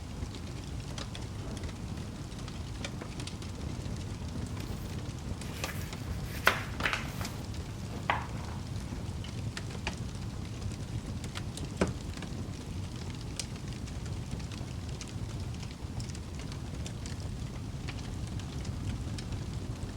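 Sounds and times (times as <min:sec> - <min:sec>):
fire crackling and popping: 0:00.0 - 0:19.9.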